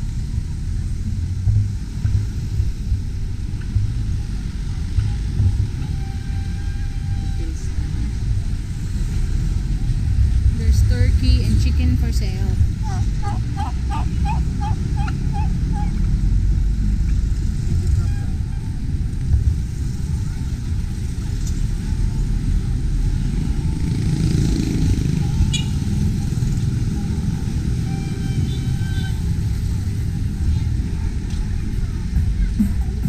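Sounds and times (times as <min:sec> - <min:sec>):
street traffic rumble: 0:00.0 - 0:33.0
turkey calling: 0:12.8 - 0:16.0.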